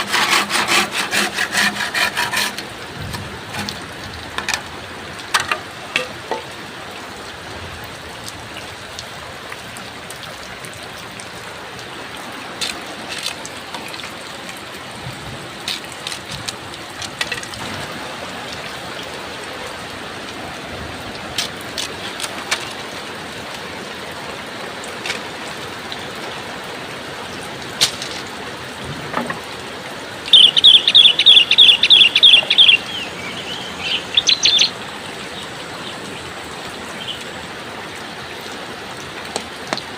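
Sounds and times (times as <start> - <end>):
steady rain hiss: 0.0 - 39.9
bird chirping: 30.3 - 34.8.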